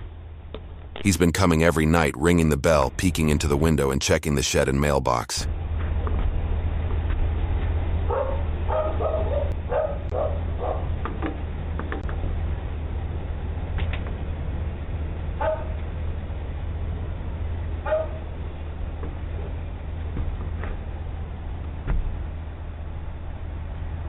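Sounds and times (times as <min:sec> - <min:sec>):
steady low rumble: 0:00.0 - 0:24.0
dog barking: 0:08.1 - 0:10.9, 0:15.4 - 0:15.8, 0:17.8 - 0:18.3.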